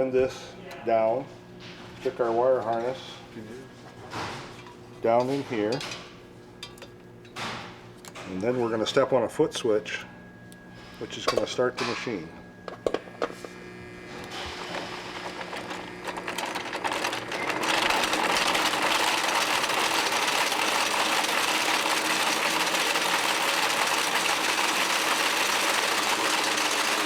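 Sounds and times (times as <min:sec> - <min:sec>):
braiding machine rattling: 0:14.6 - 0:27.0.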